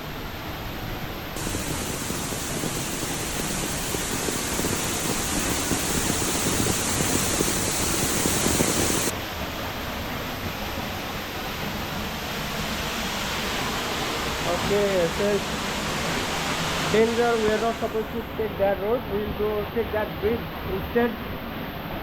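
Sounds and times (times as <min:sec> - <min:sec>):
waterfall rushing water: 0:01.2 - 0:18.6
bright loud hiss: 0:01.4 - 0:09.1, 0:11.1 - 0:18.7.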